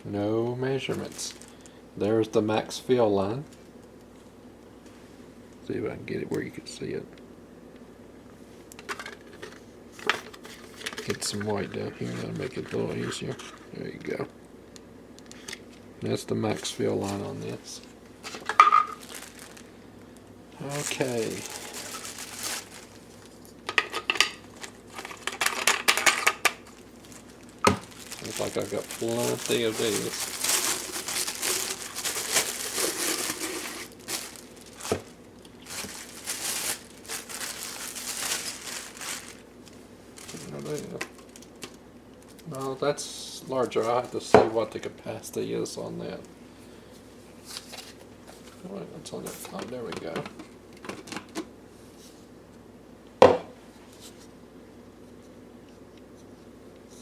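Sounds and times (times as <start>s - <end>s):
plastic packaging crinkling: 0.8s - 1.8s, 16.5s - 42.8s.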